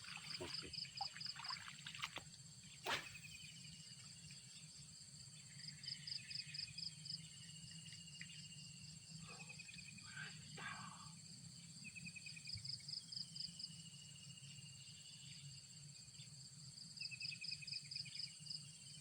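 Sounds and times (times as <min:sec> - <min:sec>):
insects chirping: 0:00.0 - 0:19.0.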